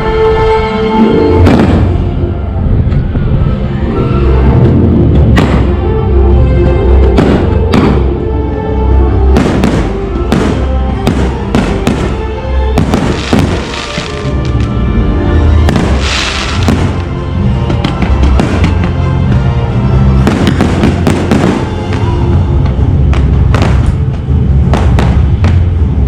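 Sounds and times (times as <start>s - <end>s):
loud show music: 0.0s - 26.0s
fireworks bangs: 1.4s - 2.1s, 5.2s - 5.8s, 7.1s - 8.1s, 9.3s - 12.2s, 12.8s - 14.8s, 15.6s - 19.5s, 20.2s - 26.0s
fireworks crackling: 9.4s - 12.2s, 12.8s - 14.8s, 15.6s - 26.0s.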